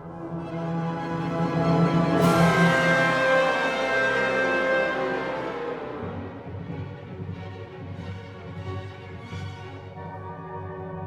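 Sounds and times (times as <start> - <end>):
sustained strings: 0.0 - 11.0.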